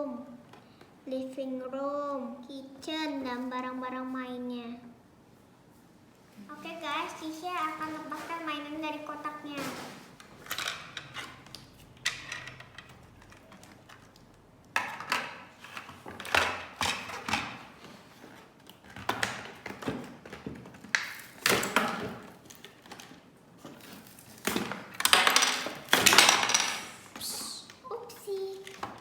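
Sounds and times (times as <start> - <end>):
packaging rustling: 6.6 - 11.8, 18.0 - 25.1.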